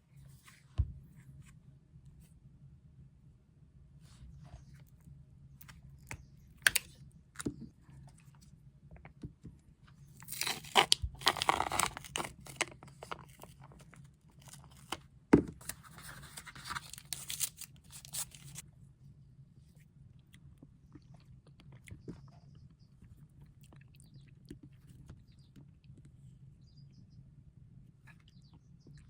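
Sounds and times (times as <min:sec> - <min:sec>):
wrapper rustling and tearing: 0:10.2 - 0:13.6, 0:15.7 - 0:18.6.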